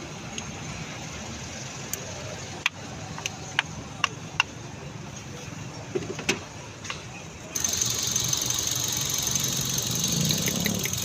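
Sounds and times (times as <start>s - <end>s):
car engine idling: 5.8s - 11.0s
sharp engine ticks: 7.6s - 11.0s.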